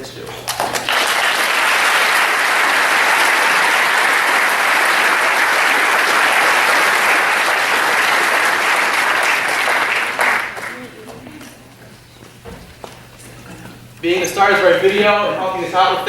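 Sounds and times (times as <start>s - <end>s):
audience applauding: 0.4s - 11.6s.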